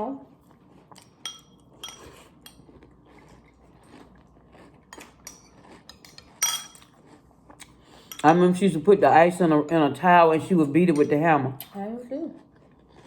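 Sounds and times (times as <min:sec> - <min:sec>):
crunchy cereal being chewed: 0:00.4 - 0:08.1, 0:12.2 - 0:13.0
spoon clinking against bowl: 0:01.2 - 0:02.6, 0:04.9 - 0:06.9, 0:08.0 - 0:08.3.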